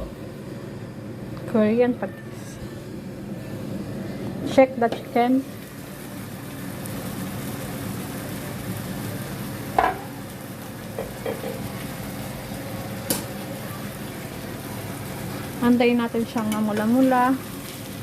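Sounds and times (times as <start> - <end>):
chicken sizzling in a pan: 5.0 - 18.0
utensil knocking against pan: 9.8 - 10.1.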